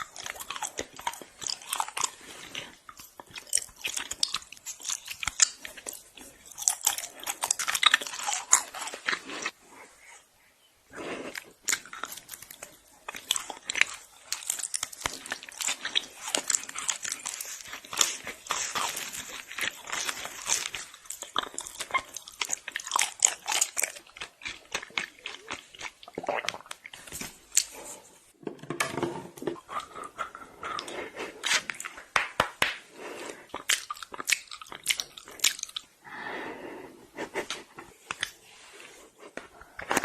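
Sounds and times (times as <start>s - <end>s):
crunchy bites and chewing: 0.0s - 9.6s, 11.2s - 27.8s.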